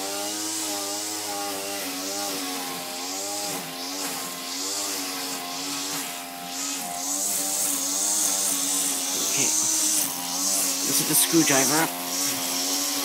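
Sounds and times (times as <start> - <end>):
string trimmer engine running: 0.0 - 13.0.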